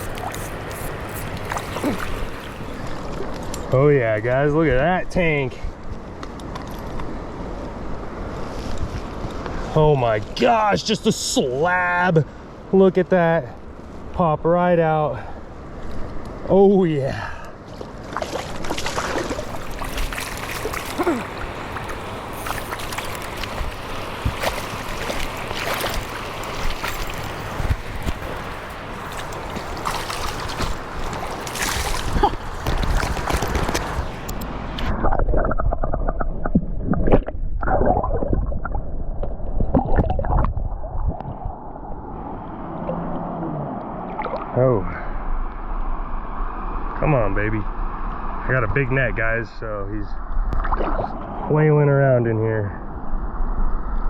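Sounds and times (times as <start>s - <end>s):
river water rushing: 0.0s - 3.1s, 18.0s - 34.7s
wind on microphone: 23.4s - 42.2s.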